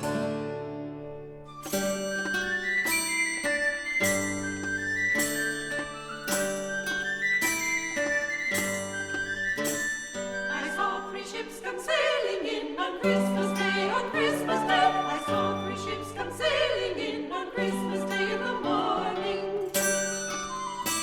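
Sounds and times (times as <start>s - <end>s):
choir singing with vibrato: 10.0s - 21.0s.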